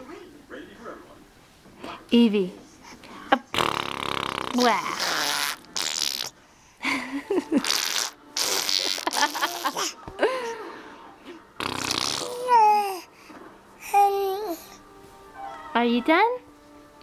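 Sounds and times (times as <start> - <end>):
baby blowing raspberries: 3.5 - 6.4, 7.6 - 10.0, 11.6 - 13.2.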